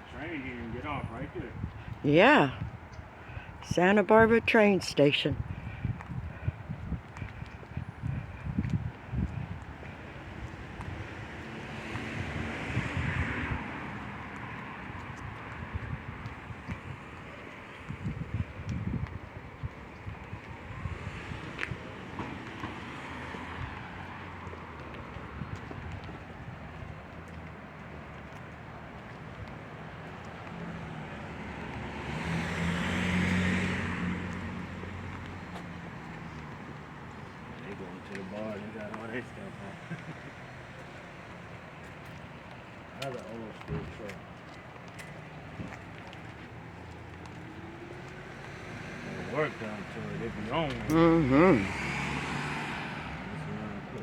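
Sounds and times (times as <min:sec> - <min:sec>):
passing vehicle: 0:00.0 - 0:54.0
wind rumbling on microphone: 0:01.4 - 0:03.6, 0:05.3 - 0:11.4, 0:12.0 - 0:27.2
vehicle driving past: 0:10.5 - 0:14.9, 0:30.4 - 0:41.3, 0:46.5 - 0:54.0.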